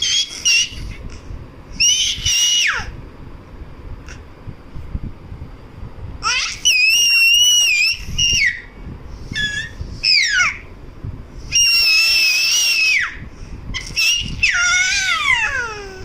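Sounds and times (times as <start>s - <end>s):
baby squealing: 0.0s - 1.0s, 6.2s - 8.7s, 9.3s - 10.7s, 11.5s - 13.2s, 13.8s - 16.0s.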